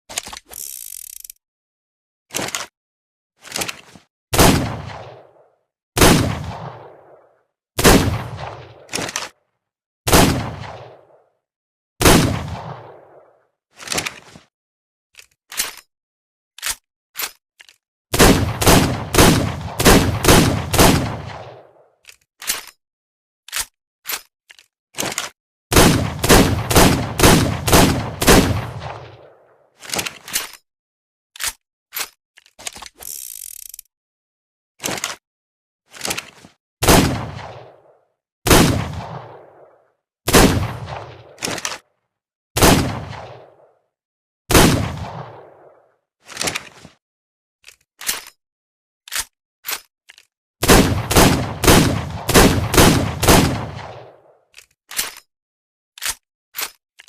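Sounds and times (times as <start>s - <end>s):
mechanical clicks: 0.1s - 1.4s, 31.4s - 33.9s
revolver gunshots: 4.4s - 5.4s, 6.0s - 8.9s, 10.1s - 11.2s, 12.0s - 13.3s, 18.2s - 21.8s, 25.7s - 29.4s, 36.8s - 37.9s, 38.5s - 41.4s, 42.6s - 43.7s, 44.5s - 45.8s, 50.6s - 54.3s.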